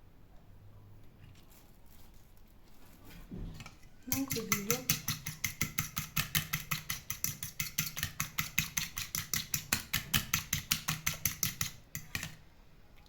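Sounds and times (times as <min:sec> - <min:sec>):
whisk clicking against bowl: 0:03.6 - 0:12.4.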